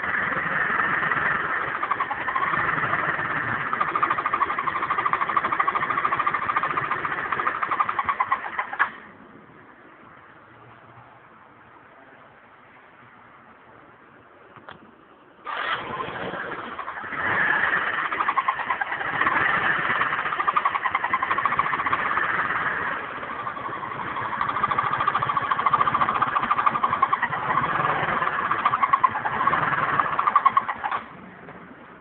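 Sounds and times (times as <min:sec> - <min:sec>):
scooter engine running: 0:00.0 - 0:09.0, 0:15.5 - 0:32.0.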